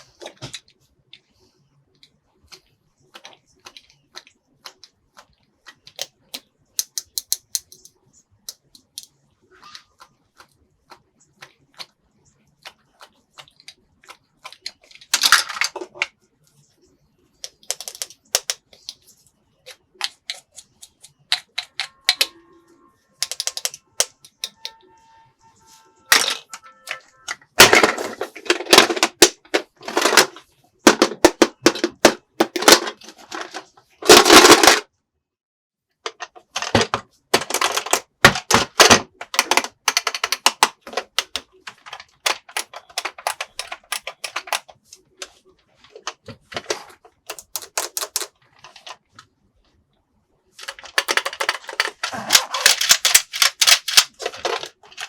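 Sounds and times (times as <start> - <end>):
plastic toy pieces clattering: 14.5 - 16.1, 17.5 - 18.9, 23.2 - 24.7, 26.1 - 34.8, 36.1 - 44.7, 45.9 - 49.0, 50.6 - 55.0.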